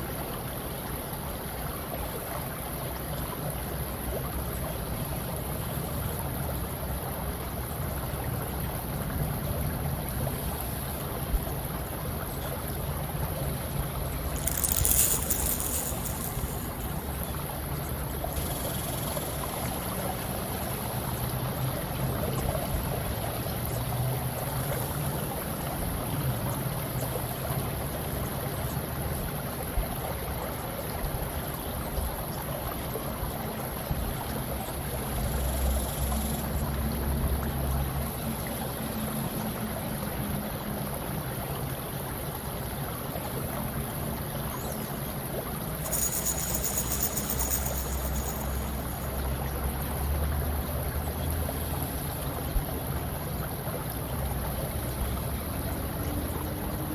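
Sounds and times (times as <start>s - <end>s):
running water: 9.7s - 26.8s, 42.6s - 56.5s.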